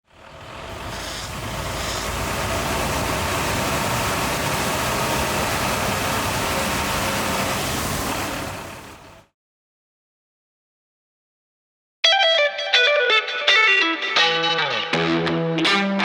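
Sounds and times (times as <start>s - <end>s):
engine running with hiss: 0.1s - 9.3s.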